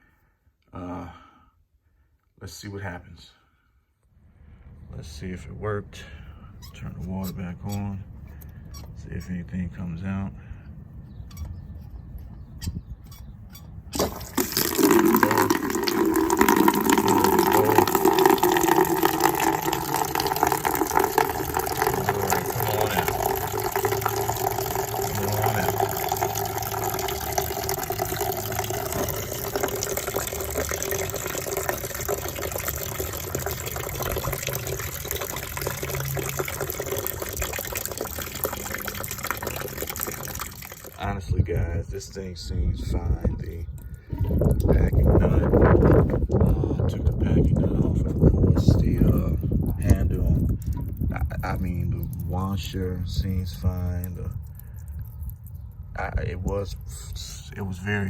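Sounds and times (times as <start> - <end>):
water rushing from hose spigot: 13.9 - 41.2, 43.3 - 46.5, 47.5 - 56.9
humming tone in water flow: 14.0 - 41.0.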